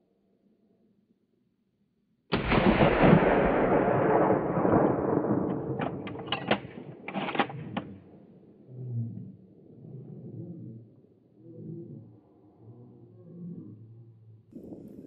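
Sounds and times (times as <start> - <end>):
rifle shot with rolling echo: 2.3 - 8.1.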